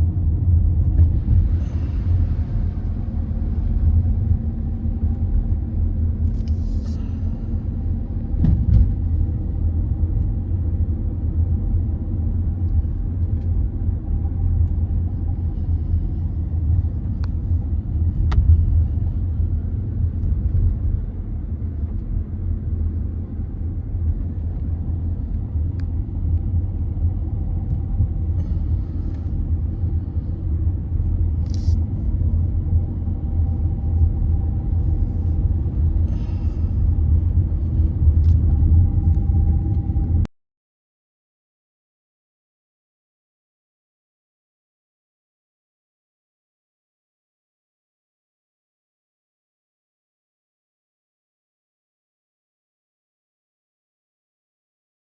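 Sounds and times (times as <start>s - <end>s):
vehicle driving rumble: 0.0s - 40.3s.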